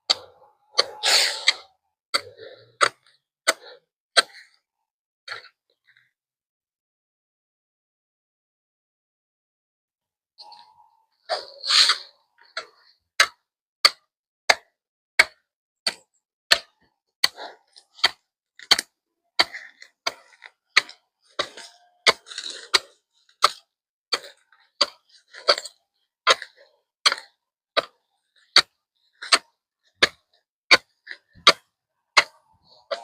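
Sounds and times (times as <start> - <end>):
hand tool chopping hard ground: 15.2 - 33.0.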